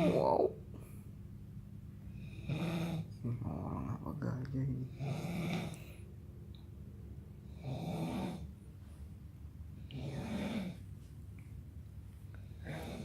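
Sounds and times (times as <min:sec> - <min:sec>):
snoring: 0:02.2 - 0:03.1, 0:04.9 - 0:05.8, 0:07.5 - 0:08.5, 0:09.9 - 0:10.8, 0:12.4 - 0:13.0.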